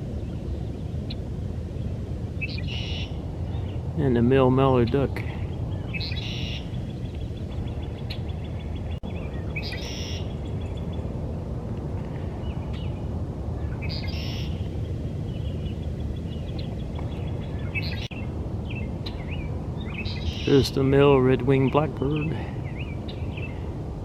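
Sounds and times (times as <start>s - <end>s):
blackbird singing: 2.4s - 11.0s, 13.6s - 14.6s, 15.3s - 23.6s.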